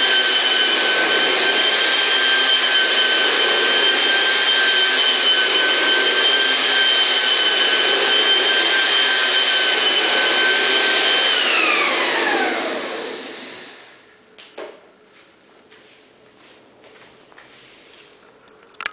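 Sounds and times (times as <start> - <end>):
floor polisher motor whining: 0.0 - 14.0.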